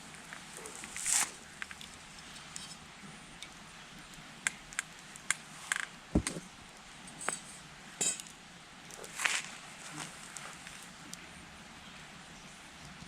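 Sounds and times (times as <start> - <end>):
campfire crackling and popping: 0.0 - 7.4, 8.2 - 11.2
campfire hiss: 0.0 - 13.0
low thud: 6.2 - 6.4.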